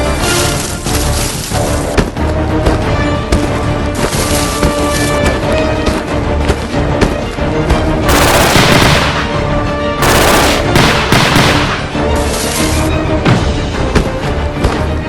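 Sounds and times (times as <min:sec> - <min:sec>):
dramatic background music: 0:00.0 - 0:15.0
gunfire volleys: 0:08.1 - 0:12.2.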